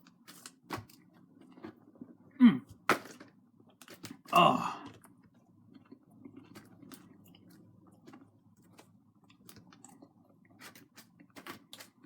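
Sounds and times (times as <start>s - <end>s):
chewing and mouth sounds: 5.7s - 11.2s.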